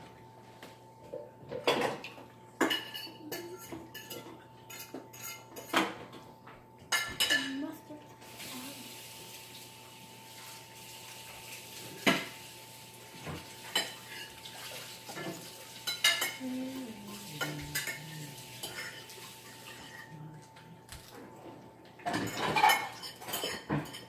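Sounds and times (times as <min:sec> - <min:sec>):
dishes and utensils clinking: 0:01.0 - 0:07.6, 0:13.1 - 0:20.6, 0:21.4 - 0:24.0.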